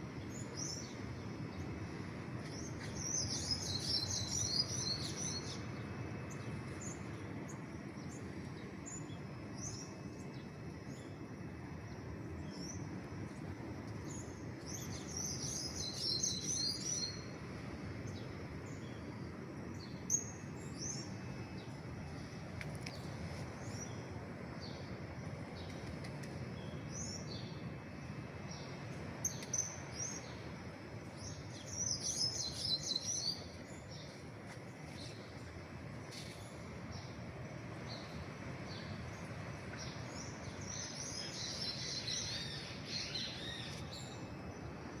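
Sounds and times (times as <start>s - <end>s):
background hiss: 0.0s - 45.0s
small birds chirping: 18.1s - 37.2s, 37.8s - 44.6s.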